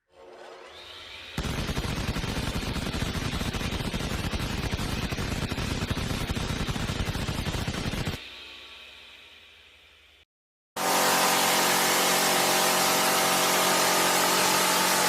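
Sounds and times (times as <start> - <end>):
rotary machine gun firing: 1.4 - 8.2.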